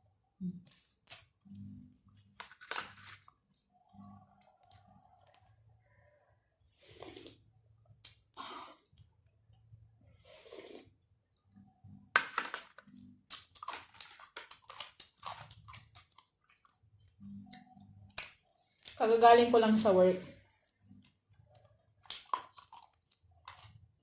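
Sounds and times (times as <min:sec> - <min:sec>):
close chewing of food: 0:13.2 - 0:17.3, 0:20.4 - 0:24.0
wet mouth clicks and smacks: 0:22.0 - 0:23.8.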